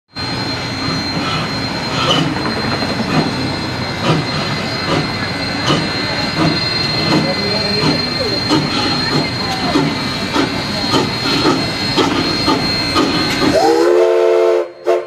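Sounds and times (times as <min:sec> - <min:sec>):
high-pitched squeal: 0:00.1 - 0:14.9
steam train rumbling on track: 0:00.1 - 0:15.0
knocking of train: 0:02.0 - 0:13.9.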